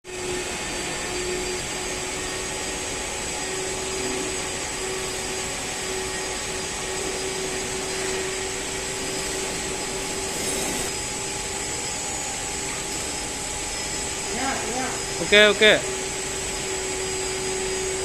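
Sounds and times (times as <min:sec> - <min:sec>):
welding arc hissing and crackling: 0:06.4 - 0:11.0.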